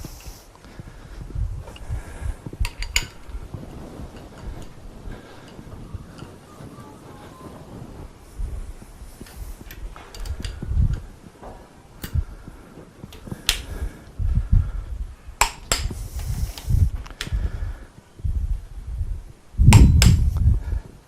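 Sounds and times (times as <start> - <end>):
dull low thumps: 0.0 - 6.8, 7.4 - 21.0
metal tools clicking and knocking: 2.6 - 3.5, 4.1 - 6.5, 9.2 - 11.1, 12.0 - 12.2, 15.4 - 17.4.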